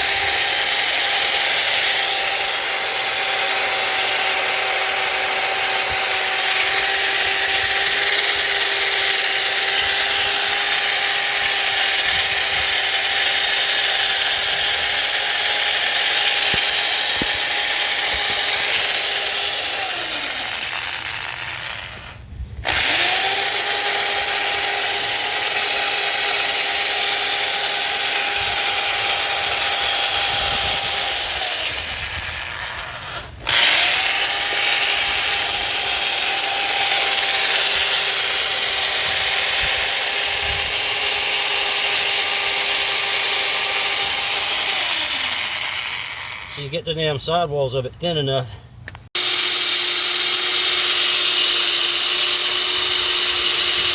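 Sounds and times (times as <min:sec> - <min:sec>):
power drill motor whine: 0:00.0 - 0:46.7, 0:49.2 - 0:53.9
drill bit grinding steel: 0:00.0 - 0:46.8, 0:49.1 - 0:53.9.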